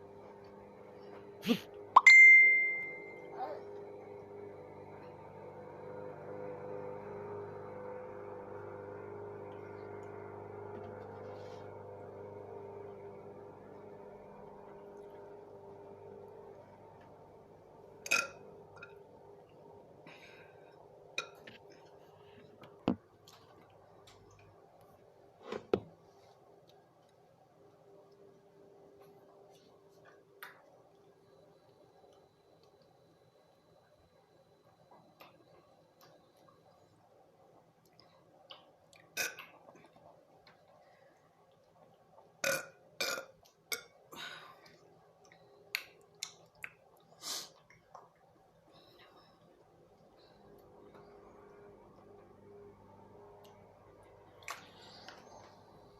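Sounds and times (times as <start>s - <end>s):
faint steady hum: 0.0s - 55.9s
person burping: 39.2s - 39.5s, 42.4s - 43.9s.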